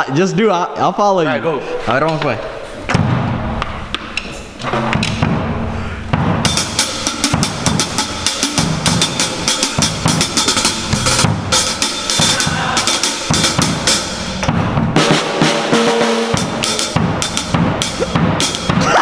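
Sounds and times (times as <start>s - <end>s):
fast drum beat: 6.1s - 19.0s.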